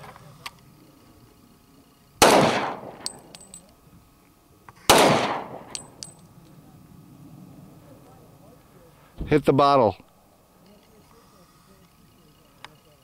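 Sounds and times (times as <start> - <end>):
pistol shots echoing: 2.2 - 3.5, 4.9 - 6.1
small metal clinks: 2.8 - 3.8, 5.5 - 6.6.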